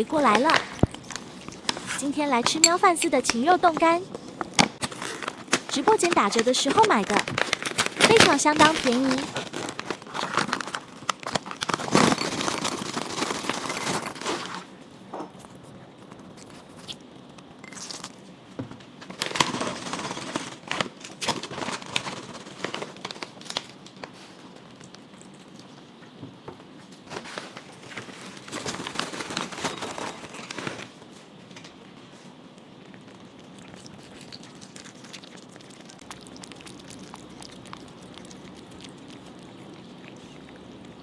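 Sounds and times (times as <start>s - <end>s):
crisp clicks of dry treats: 3.2s - 14.6s, 19.1s - 25.8s, 32.5s - 41.0s
plastic bag crinkling: 3.6s - 14.7s, 19.1s - 24.2s, 27.2s - 31.0s, 32.9s - 41.0s.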